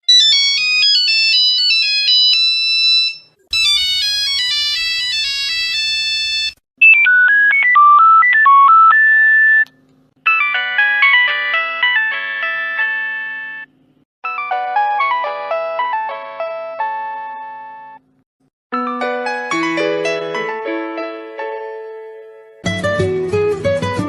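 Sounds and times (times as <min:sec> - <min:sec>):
electronic phone ringtone melodies: 0:00.1 - 0:09.6, 0:10.2 - 0:18.0.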